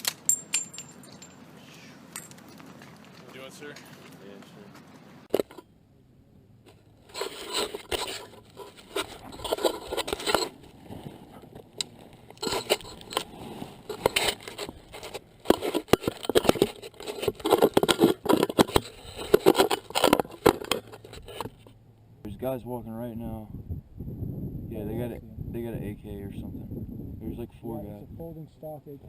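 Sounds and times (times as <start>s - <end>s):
close scraping and rustling: 0.0s - 5.6s, 6.6s - 21.8s.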